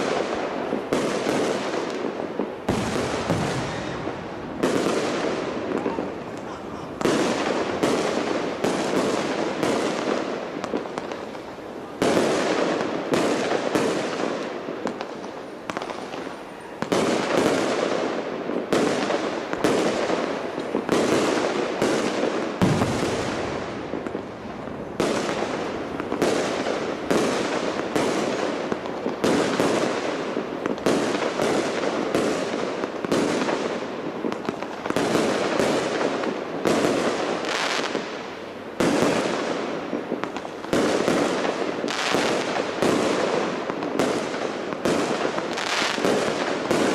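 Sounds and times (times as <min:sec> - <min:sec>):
fireworks bursting: 0:00.0 - 0:46.9.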